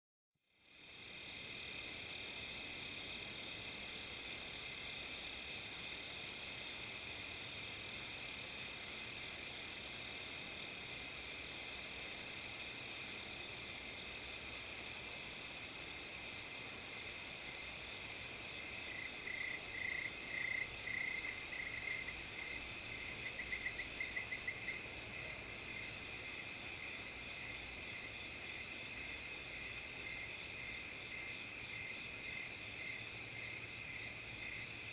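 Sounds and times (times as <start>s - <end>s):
insect chirping at lower pitch: 0.5s - 34.9s
crickets trilling: 0.6s - 34.9s.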